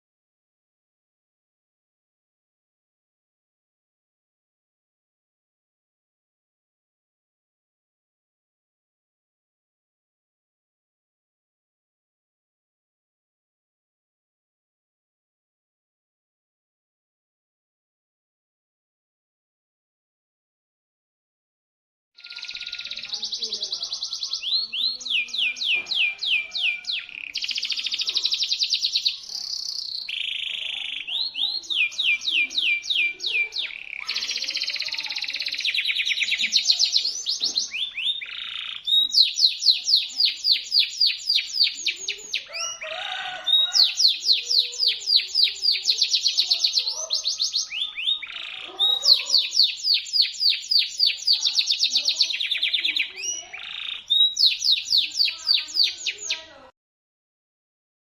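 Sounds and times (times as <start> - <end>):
canary singing in trills: 22.2 - 56.7.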